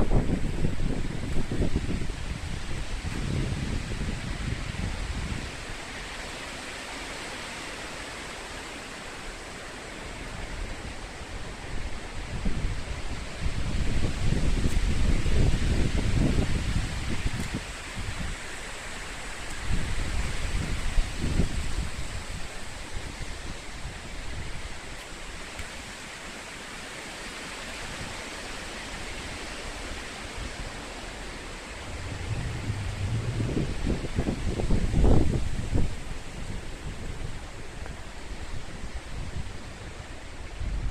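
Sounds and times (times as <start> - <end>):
wind buffeting microphone: 0.0 - 5.8, 11.4 - 25.0, 30.3 - 40.9
wind rushing through trees: 0.0 - 40.9.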